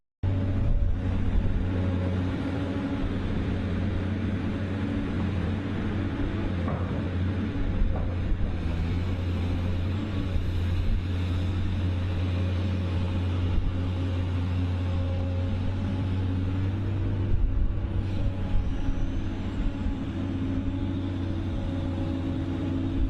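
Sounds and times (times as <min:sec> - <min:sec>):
heavy machine engine humming: 0:00.2 - 0:23.0.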